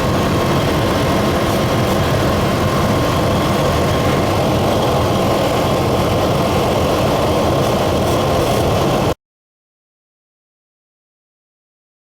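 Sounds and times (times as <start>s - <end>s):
truck engine idling: 0.0s - 9.1s.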